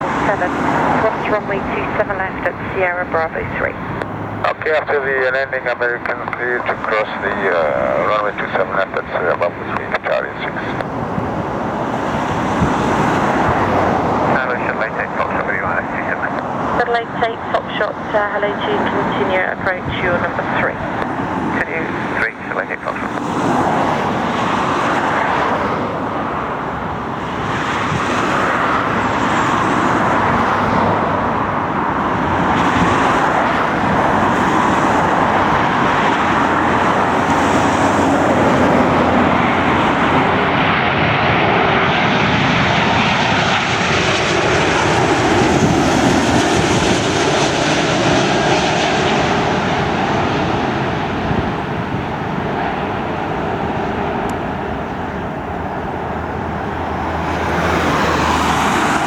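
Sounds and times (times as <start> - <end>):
jet engine rush: 0.0 - 59.0.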